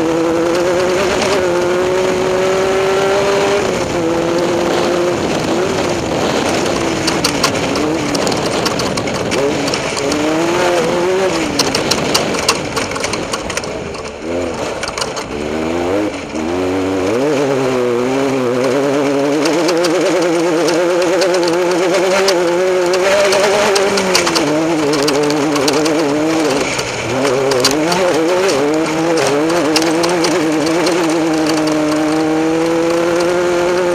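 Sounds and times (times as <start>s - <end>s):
race vehicle engine revving: 0.0s - 33.9s
clicks and knocks from rough ground: 6.4s - 15.4s, 19.4s - 33.4s.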